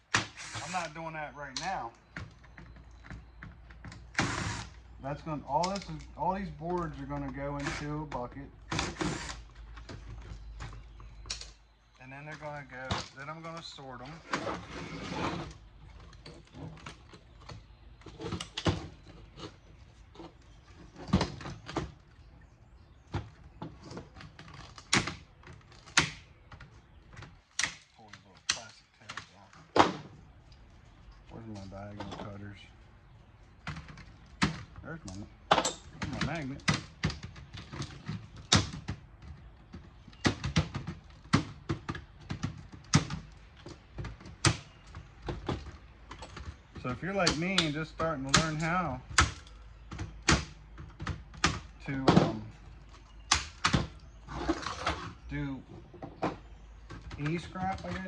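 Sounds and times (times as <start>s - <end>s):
hand tools clicking and knocking: 56.0s - 58.0s.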